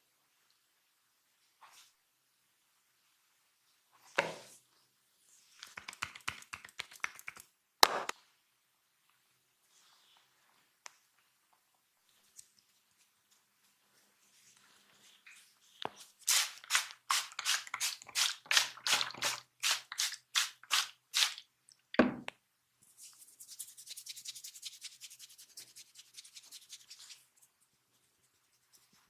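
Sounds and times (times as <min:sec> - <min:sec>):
hands rubbing hair and scalp: 0:05.3 - 0:07.5, 0:22.8 - 0:29.0.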